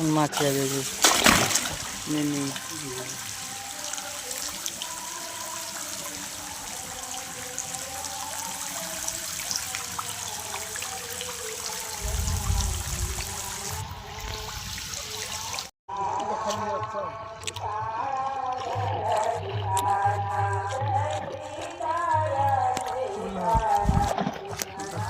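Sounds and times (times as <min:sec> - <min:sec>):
shallow water splashing: 0:00.4 - 0:15.7
low rumble: 0:12.0 - 0:14.7.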